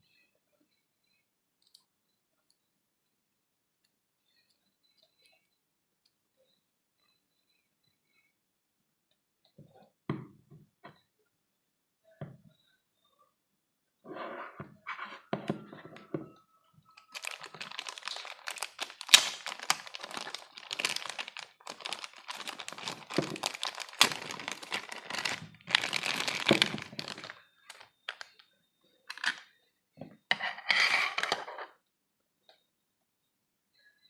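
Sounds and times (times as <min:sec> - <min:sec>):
plastic packaging crinkling: 0:17.0 - 0:28.4.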